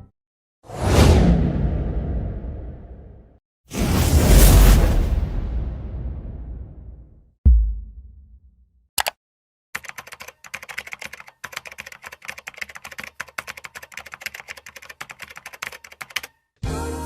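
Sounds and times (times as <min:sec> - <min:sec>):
fast keyboard typing: 0:09.8 - 0:16.4
music: 0:16.6 - 0:17.0.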